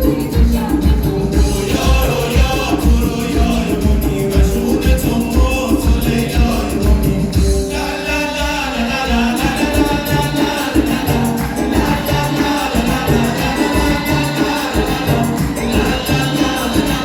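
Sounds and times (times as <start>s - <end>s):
steady percussion: 0.0s - 17.0s.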